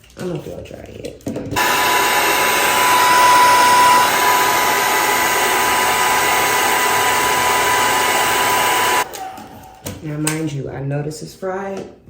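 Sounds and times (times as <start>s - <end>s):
hair dryer whining: 1.6s - 9.2s.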